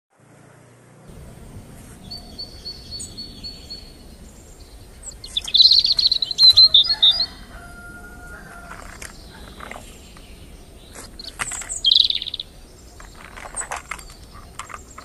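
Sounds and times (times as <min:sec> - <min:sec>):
birds chirping and singing: 0:01.1 - 0:15.0
low steady bird whistle: 0:02.0 - 0:07.8.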